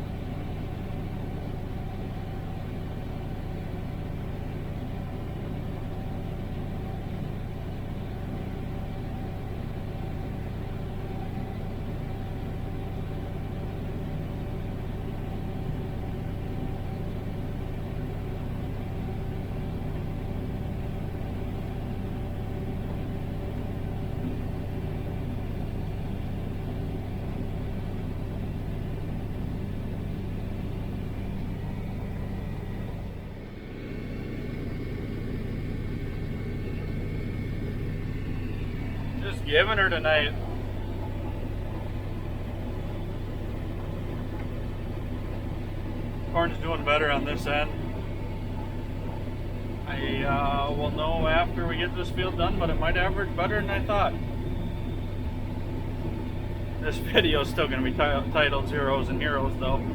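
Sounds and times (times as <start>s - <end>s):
combine harvester drone: 0.0s - 59.9s.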